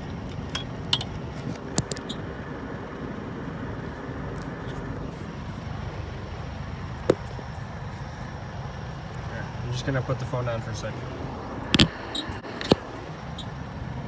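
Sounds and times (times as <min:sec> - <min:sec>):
steady low hum: 0:00.0 - 0:14.0
hand tools clicking and clinking: 0:00.5 - 0:01.2.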